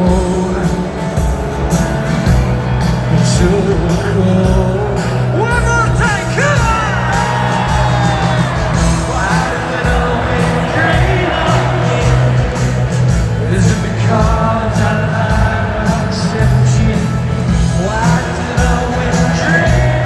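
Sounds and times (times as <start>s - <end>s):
rock band playing live: 0.0s - 20.0s
person singing: 3.1s - 20.0s
crowd whooping and shouting: 5.6s - 13.7s.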